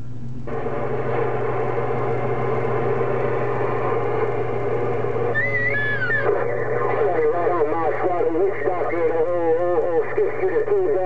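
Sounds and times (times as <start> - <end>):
low hum: 0.0 - 11.0
radio static hiss: 0.4 - 11.0
held radio tones: 5.3 - 11.0.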